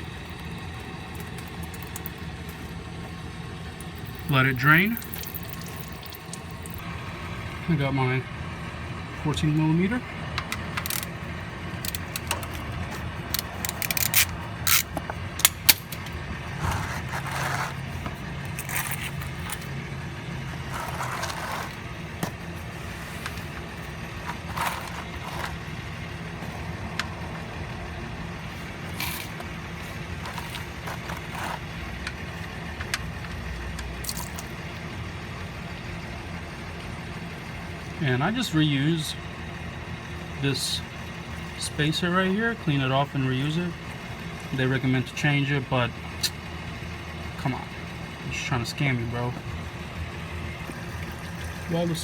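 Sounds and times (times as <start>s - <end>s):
wrench clicking and scraping: 10.4s - 11.2s, 11.8s - 19.7s, 30.2s - 31.6s.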